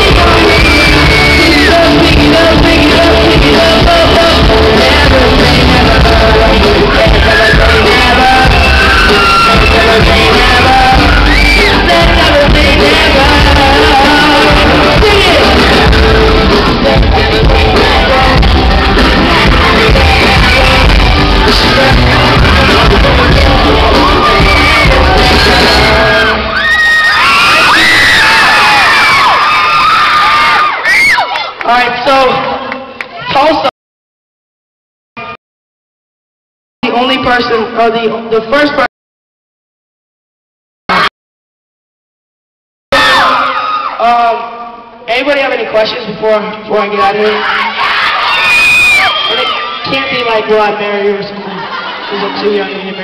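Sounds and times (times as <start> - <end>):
live pop band with singer: 0.0 - 29.8
high-pitched screams: 0.2 - 1.9, 6.8 - 11.9, 19.0 - 31.6, 43.0 - 44.0, 47.2 - 50.2
audience shouting: 6.6 - 11.9, 14.1 - 31.7, 47.1 - 50.6.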